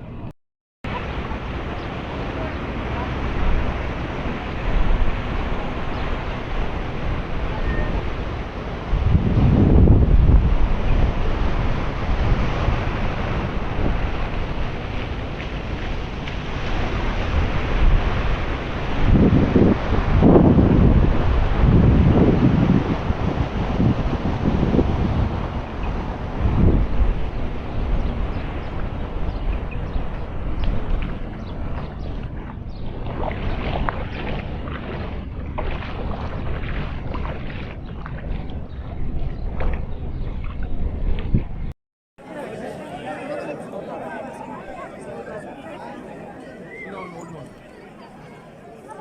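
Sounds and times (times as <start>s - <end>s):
wind buffeting microphone: 0.0s - 41.7s
small ticks and splashes: 32.8s - 38.6s.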